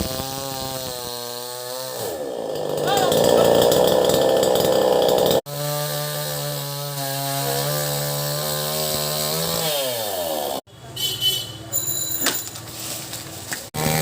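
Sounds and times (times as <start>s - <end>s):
chainsaw cutting wood: 0.0s - 10.6s, 13.8s - 14.0s
chainsaw running steadily: 0.0s - 10.6s, 13.8s - 14.0s.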